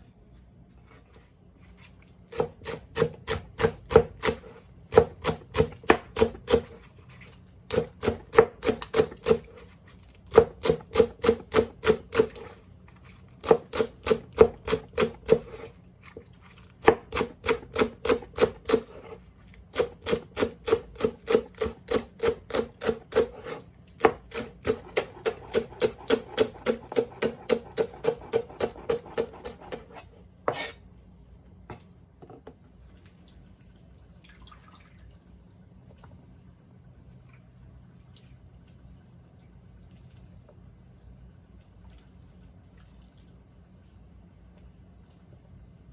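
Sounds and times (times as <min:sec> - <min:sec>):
knife chopping on cutting board: 0:02.3 - 0:06.8, 0:07.7 - 0:09.5, 0:16.8 - 0:19.2, 0:19.8 - 0:30.8.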